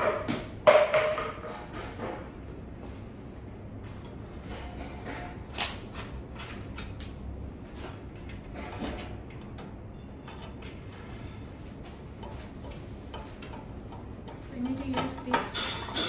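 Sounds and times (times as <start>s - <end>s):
steady low hum: 0.0s - 16.0s
chair parts clicking and knocking: 12.1s - 16.0s.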